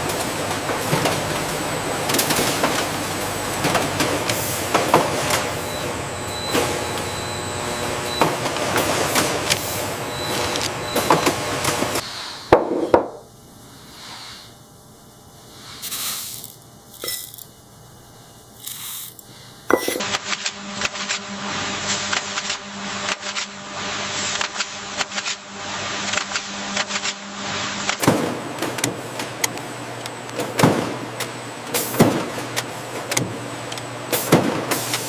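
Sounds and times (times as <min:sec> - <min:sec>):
rapid machinery clicking and clattering: 0:00.0 - 0:07.3
steady machinery hum: 0:00.0 - 0:35.0
short hissing bursts: 0:15.5 - 0:17.4, 0:18.6 - 0:19.2.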